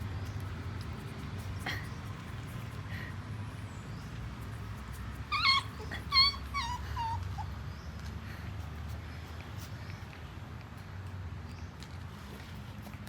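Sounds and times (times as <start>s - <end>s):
puppy whimpering: 5.3s - 7.6s.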